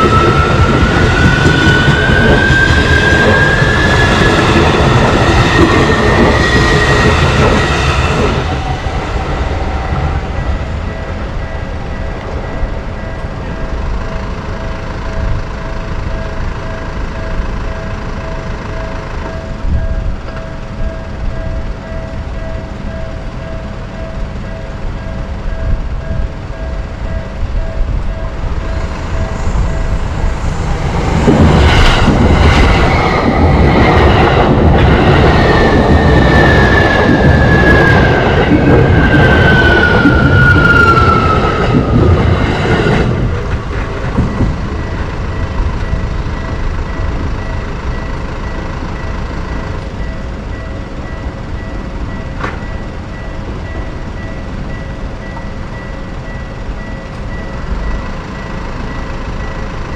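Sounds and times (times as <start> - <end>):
train whine falling in pitch: 0.0 - 23.8, 25.4 - 59.9
electric train passing: 0.0 - 59.9
railroad crossing bell ringing: 0.0 - 59.9.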